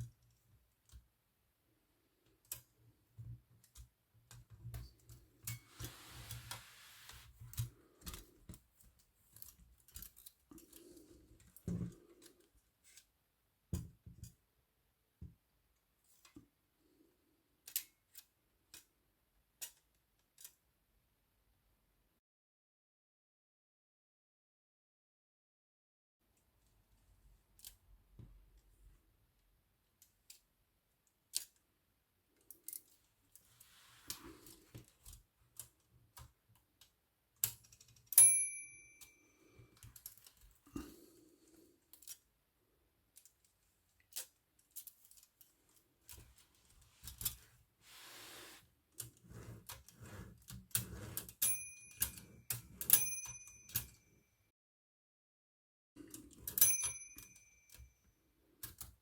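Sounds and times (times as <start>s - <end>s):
typewriter bell dinging: 38.2s - 39.5s, 51.4s - 54.1s, 56.5s - 57.9s
rasping slide: 47.8s - 51.3s.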